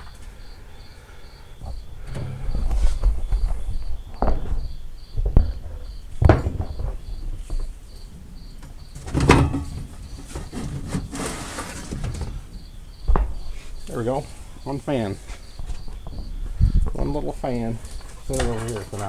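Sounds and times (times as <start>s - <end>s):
crickets chirping: 0.0s - 19.0s
metal clunks and knocks: 1.5s - 19.0s
metal scrape: 1.9s - 3.8s, 9.0s - 12.5s.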